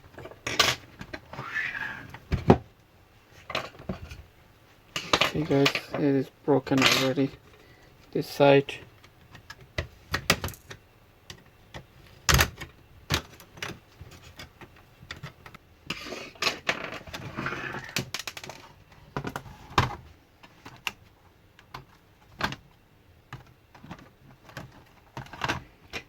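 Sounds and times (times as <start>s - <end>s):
plastic parts clicking and knocking: 8.9s - 21.0s, 21.6s - 26.0s.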